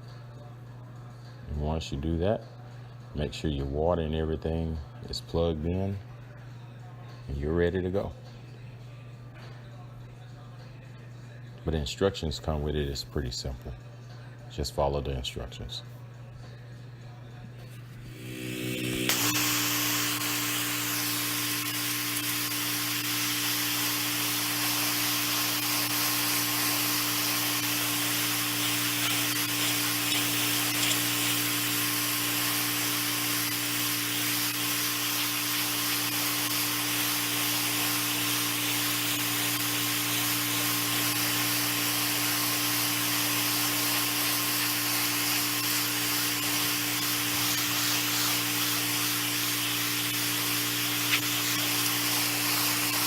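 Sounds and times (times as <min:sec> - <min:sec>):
pressure washer engine hum: 0:17.8 - 0:53.0
high-pressure water jet hissing: 0:18.1 - 0:53.0.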